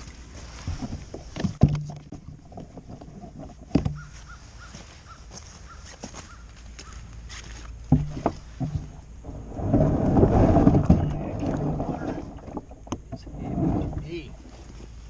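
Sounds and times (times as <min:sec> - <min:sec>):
knocks on a boat: 0:07.9 - 0:09.0
water rushing or scraping: 0:07.9 - 0:15.0.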